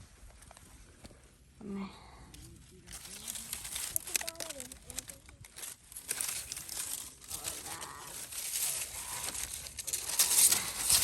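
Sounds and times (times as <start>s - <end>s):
rustling and crackling: 2.3s - 11.0s.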